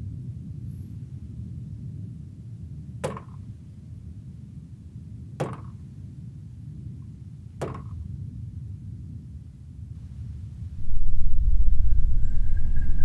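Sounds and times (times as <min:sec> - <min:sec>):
steady low rumble: 0:05.9 - 0:13.0.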